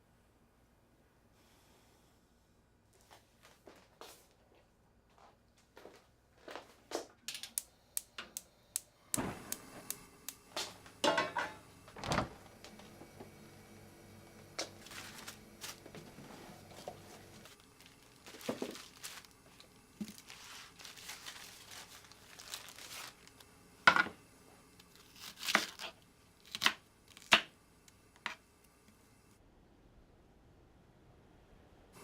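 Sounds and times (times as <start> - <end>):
rustling and crinkling: 14.6 - 23.5.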